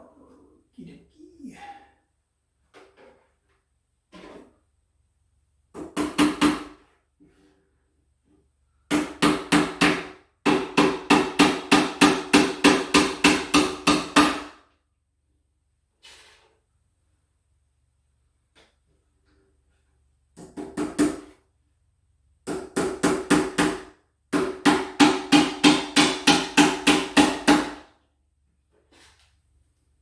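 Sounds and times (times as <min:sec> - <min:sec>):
hammer blows on wooden panel: 0:22.5 - 0:27.8.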